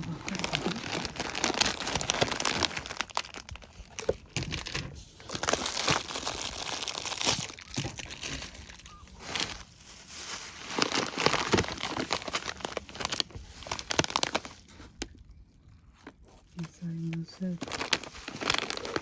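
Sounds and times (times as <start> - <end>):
packaging crinkling and rustling: 0.0 - 19.0.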